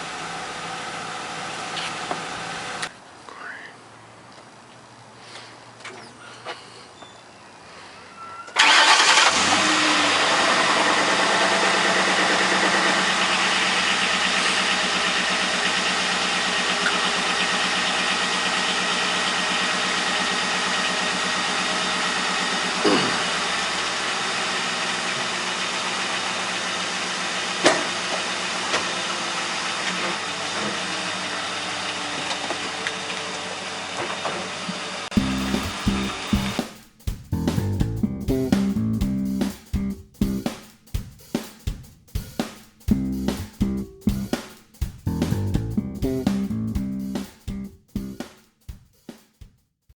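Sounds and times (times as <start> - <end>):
car engine starting and idling: 0.0 - 2.9, 8.6 - 36.6
engine knocks: 35.1 - 36.6.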